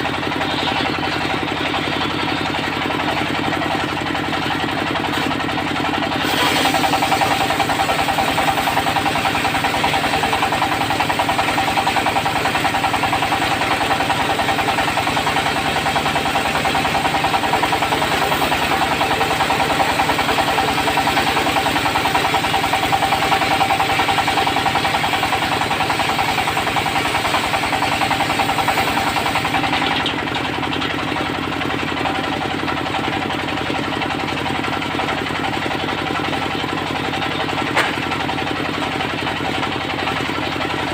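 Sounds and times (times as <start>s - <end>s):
diesel engine pulsing: 0.0s - 40.9s
saw blade cutting wood: 5.1s - 30.2s, 37.8s - 38.1s.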